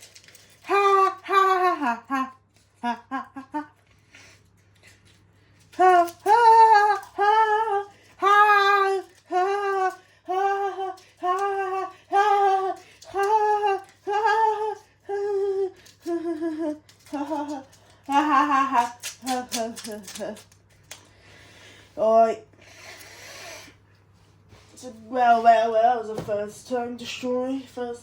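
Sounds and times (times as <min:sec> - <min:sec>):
high voice humming a tune: 0:05.8 - 0:20.3.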